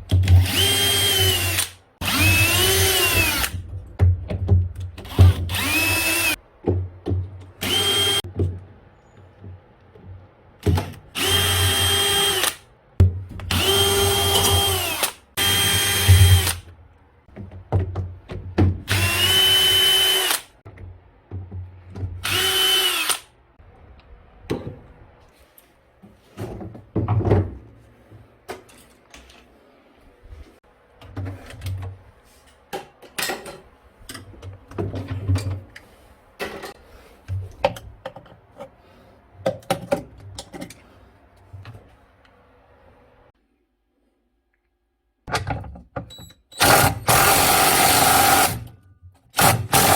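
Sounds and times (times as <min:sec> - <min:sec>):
power drill whining: 0:00.4 - 0:03.5, 0:05.2 - 0:06.4, 0:07.6 - 0:08.2, 0:11.2 - 0:12.6, 0:13.5 - 0:16.6, 0:18.9 - 0:20.5, 0:22.2 - 0:23.3, 0:46.6 - 0:48.6.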